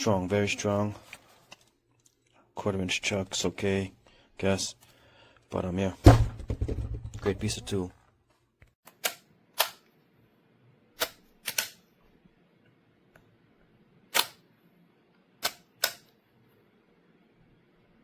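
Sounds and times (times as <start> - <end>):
sharp clicks: 15.4 - 16.1.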